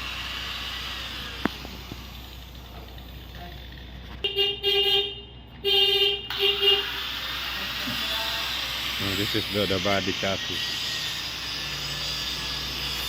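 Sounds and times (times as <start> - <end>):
vehicle horn honking: 4.2 - 7.0.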